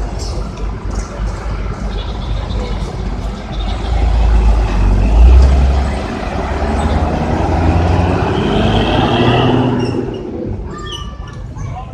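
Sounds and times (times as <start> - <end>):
bus diesel engine pulling away: 3.4 - 10.6.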